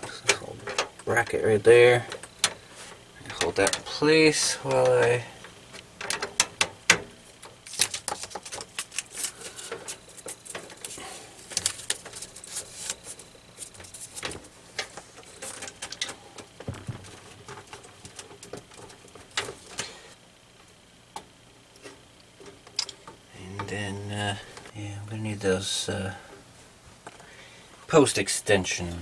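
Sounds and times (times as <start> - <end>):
small metal parts clicking: 4.7 - 19.9.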